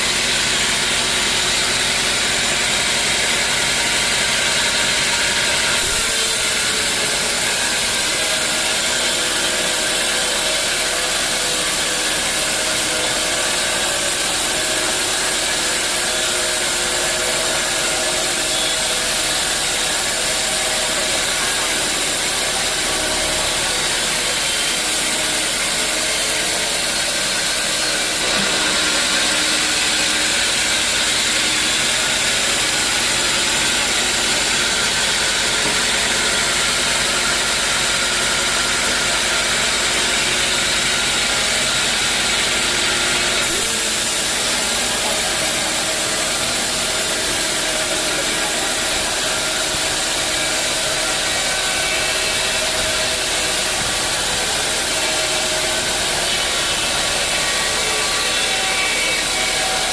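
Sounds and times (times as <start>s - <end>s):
machinery humming: 0.0s - 59.9s
saw blade hissing through wood: 5.7s - 36.0s, 42.9s - 59.9s.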